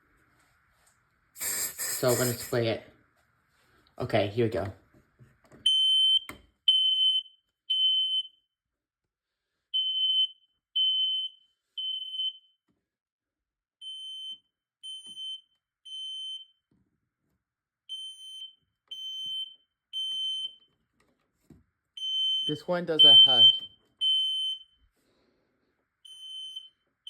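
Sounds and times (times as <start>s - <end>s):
smoke alarm beeping: 5.6s - 8.5s, 9.7s - 12.6s, 13.8s - 16.6s, 17.9s - 20.7s, 22.0s - 24.9s, 26.0s - 27.0s.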